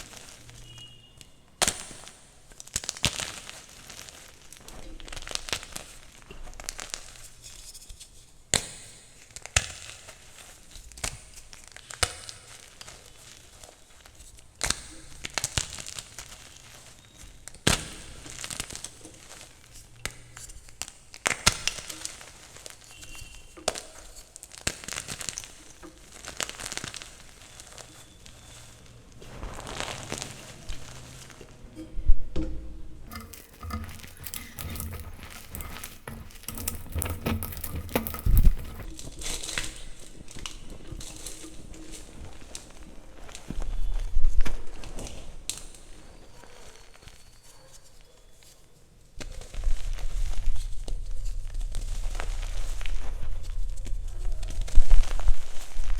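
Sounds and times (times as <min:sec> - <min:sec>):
chalk crunching and snapping: 0:33.1 - 0:38.9.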